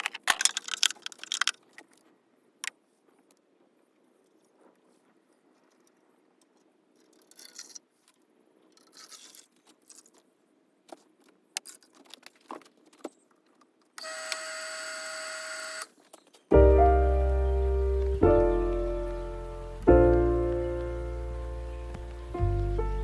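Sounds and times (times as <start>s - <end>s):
small objects clicking and clinking: 0.0s - 2.0s, 7.0s - 8.1s, 8.7s - 10.2s
rustling scrapes: 8.8s - 10.3s.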